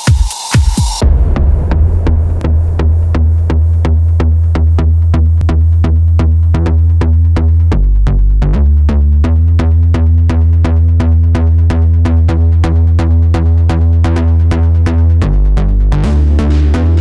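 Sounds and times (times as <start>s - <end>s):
electronic dance music: 0.0s - 1.2s.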